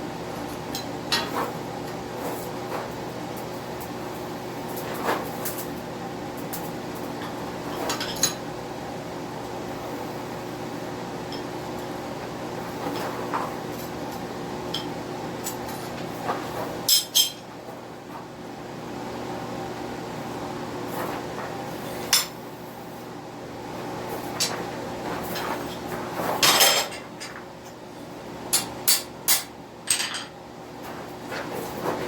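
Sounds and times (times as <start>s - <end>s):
steady hum: 0.0s - 32.0s
steel tools clinking on metal: 16.9s - 17.4s.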